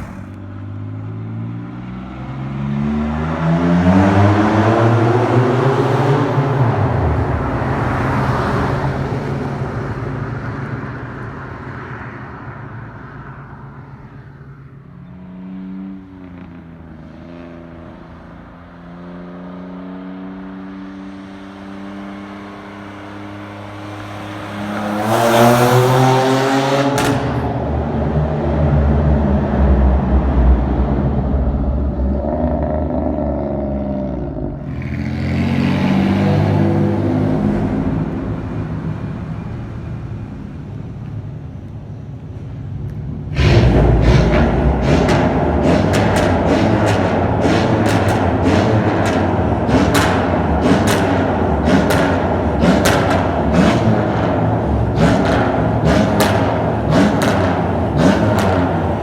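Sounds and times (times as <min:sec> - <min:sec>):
car exhaust engine revving: 0:00.0 - 0:00.6, 0:23.8 - 0:40.0, 0:43.2 - 0:59.0.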